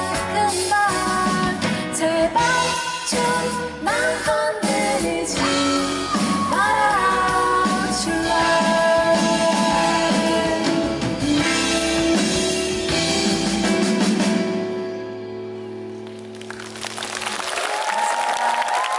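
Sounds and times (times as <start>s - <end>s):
live band playing pop-rock: 0.0s - 17.0s
crowd applause and cheering: 5.8s - 7.3s, 16.0s - 18.9s.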